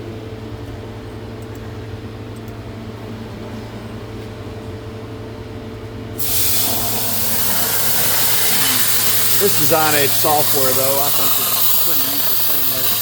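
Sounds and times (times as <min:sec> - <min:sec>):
shop machinery hum: 0:00.0 - 0:13.0
plasma cutter torch hissing: 0:06.2 - 0:13.0.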